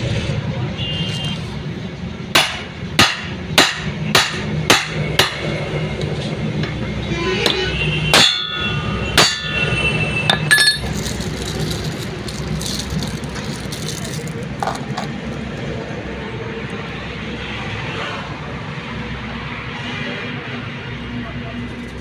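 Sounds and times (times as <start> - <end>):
hammer striking metal: 2.3 - 5.6, 7.4 - 10.9
light metal clinks: 10.3 - 13.2.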